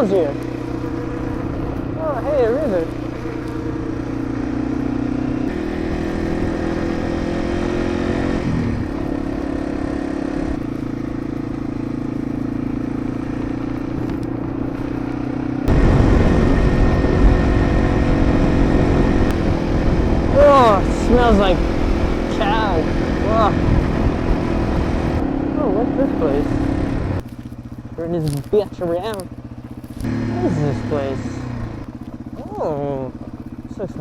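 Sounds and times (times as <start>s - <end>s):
motorcycle engine running: 0.0s - 34.0s.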